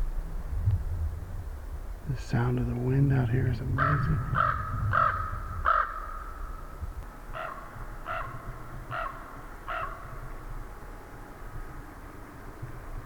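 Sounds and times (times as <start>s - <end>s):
low wind rumble: 0.0s - 13.0s
crow cawing: 3.8s - 6.4s, 7.4s - 10.1s.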